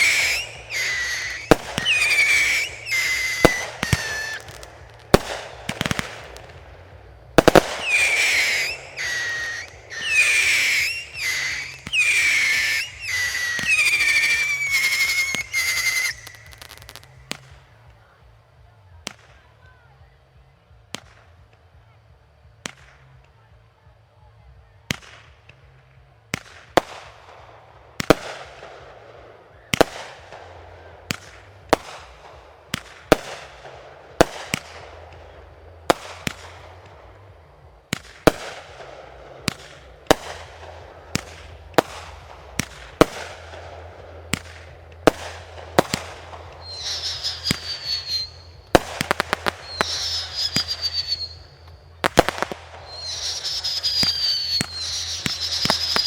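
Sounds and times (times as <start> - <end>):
shrill wavering whistle: 0.0 - 4.4, 7.8 - 16.8, 46.6 - 48.6, 49.5 - 51.6, 52.9 - 56.0
fireworks bangs: 0.0 - 17.8, 26.3 - 56.0
crackling trail: 0.0 - 56.0.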